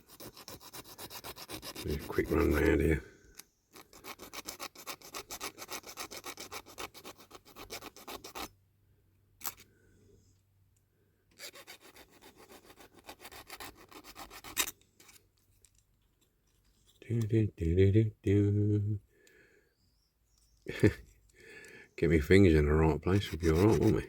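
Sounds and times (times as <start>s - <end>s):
file rasping on metal: 0.0s - 2.8s, 3.8s - 8.5s, 11.4s - 14.7s, 23.2s - 24.0s.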